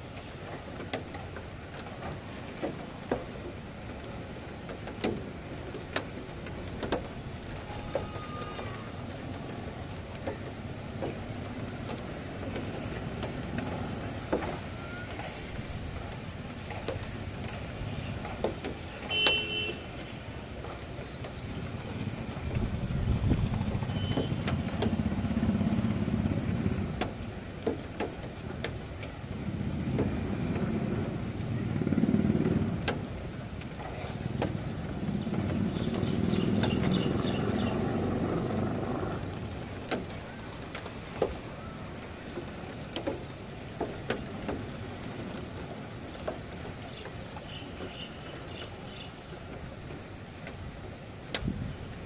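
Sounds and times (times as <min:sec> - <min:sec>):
loud honk-like tone: 0:07.7 - 0:08.9.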